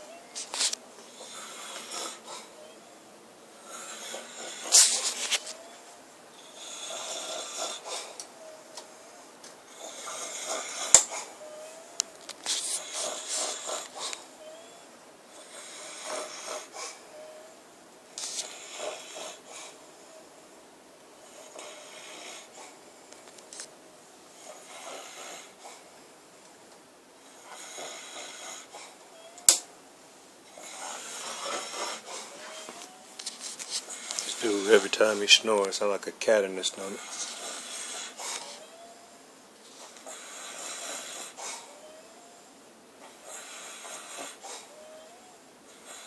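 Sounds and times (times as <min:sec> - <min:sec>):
man snoring: 0:01.1 - 0:02.7, 0:03.6 - 0:05.0, 0:06.4 - 0:08.5, 0:09.7 - 0:11.8, 0:15.3 - 0:17.4, 0:18.4 - 0:19.8, 0:21.3 - 0:22.5, 0:24.4 - 0:25.6, 0:27.3 - 0:28.8, 0:30.5 - 0:33.0, 0:33.9 - 0:35.9, 0:36.5 - 0:39.0, 0:40.0 - 0:42.4.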